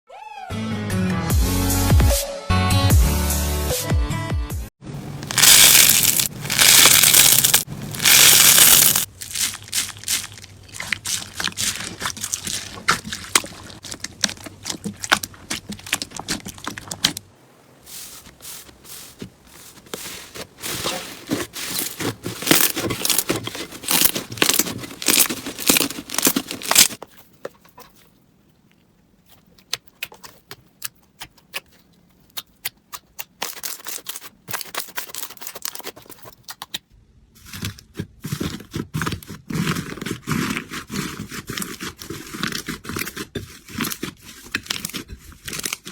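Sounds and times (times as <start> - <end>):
slime crackling and popping: 5.2 - 17.2, 21.3 - 27.0.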